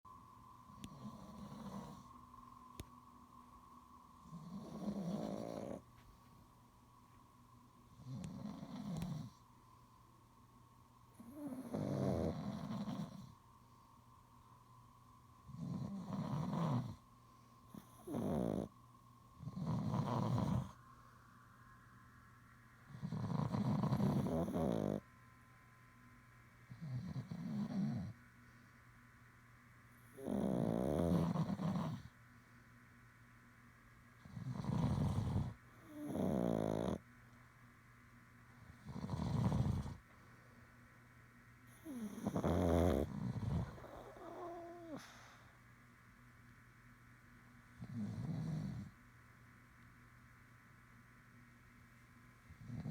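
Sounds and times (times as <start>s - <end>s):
wavering snore whine: 0.1s - 6.6s, 7.5s - 9.6s, 11.0s - 25.1s, 26.6s - 28.7s, 29.8s - 32.2s, 34.1s - 37.1s, 38.5s - 40.6s, 41.6s - 45.6s, 47.7s - 49.0s, 52.4s - 52.9s
person snoring: 4.3s - 5.8s, 23.0s - 25.0s, 30.2s - 32.0s, 34.4s - 37.0s, 41.8s - 45.4s.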